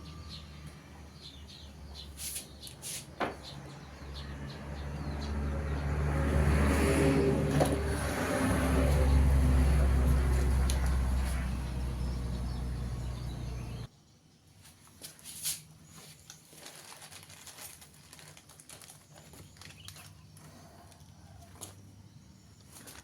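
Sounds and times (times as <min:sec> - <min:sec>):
low machine hum: 0:07.3 - 0:13.9.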